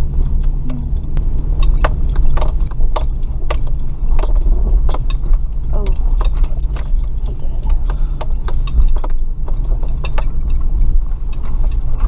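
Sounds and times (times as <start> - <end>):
knocks clicks and rattles: 0.0 - 12.0
vehicle engine low rumble: 0.0 - 12.0.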